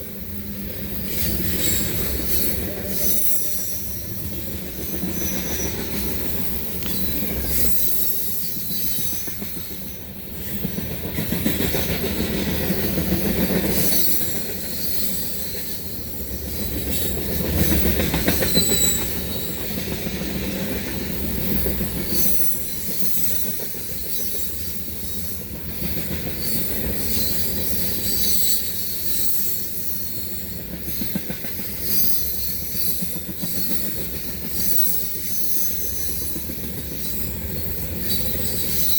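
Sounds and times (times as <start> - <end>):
freight train rumble: 0.0 - 38.9
high thin wheel squeal: 18.4 - 19.6, 34.5 - 36.4.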